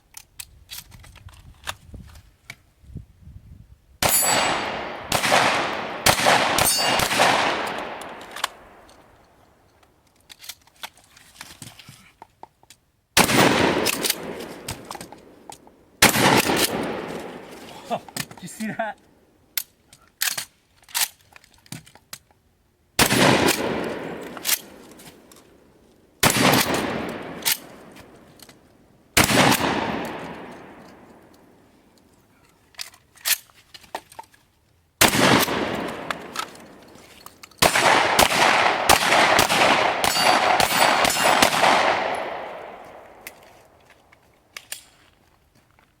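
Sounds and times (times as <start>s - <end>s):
gunshots: 4.0s - 8.8s, 13.2s - 15.2s, 16.0s - 18.7s, 23.0s - 25.0s, 26.2s - 27.9s, 29.2s - 31.0s, 35.0s - 36.8s, 37.6s - 43.2s.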